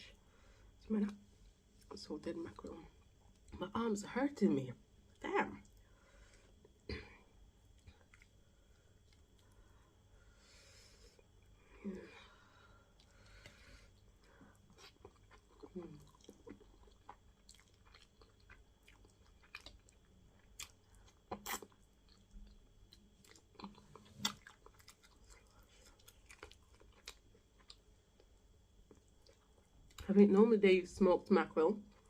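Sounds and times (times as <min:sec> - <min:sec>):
close-up chewing and mouth smacking: 0:07.6 - 0:09.7, 0:12.9 - 0:30.1.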